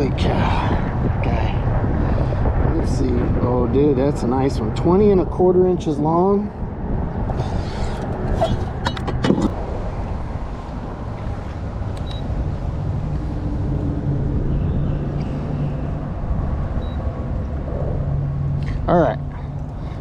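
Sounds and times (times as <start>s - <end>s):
wind buffeting microphone: 0.0s - 20.0s
sharp clicks and knocks: 8.6s - 9.6s.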